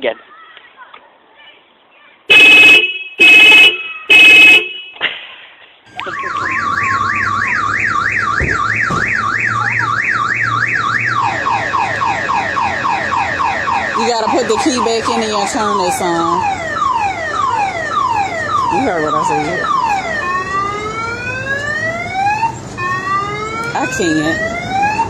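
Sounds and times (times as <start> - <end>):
car alarm blasts: 2.3 - 5.0, 5.9 - 25.0
car alarm siren warbling: 5.9 - 25.0.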